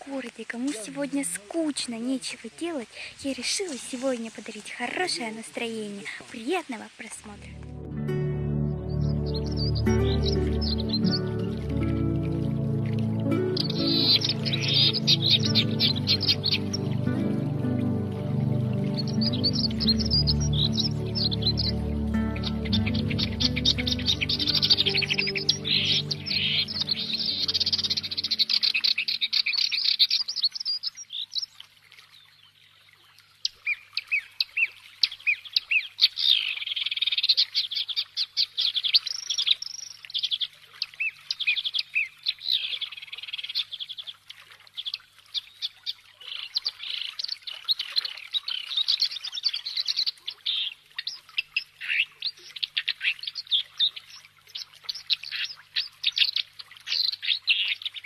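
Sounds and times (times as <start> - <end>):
small birds chirping and singing: 8.6 - 31.6, 33.4 - 58.0.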